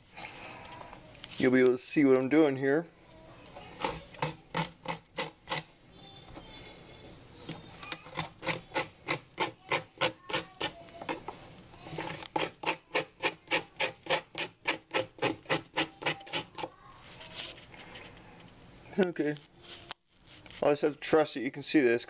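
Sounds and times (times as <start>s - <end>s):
plastic scraper rasping screen: 3.7s - 5.7s, 7.8s - 16.7s.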